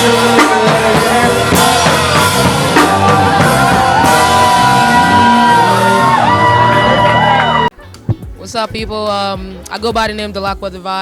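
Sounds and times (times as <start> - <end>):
afrobeats song with drums: 0.0 - 6.6, 7.7 - 11.0
person singing: 0.0 - 7.0.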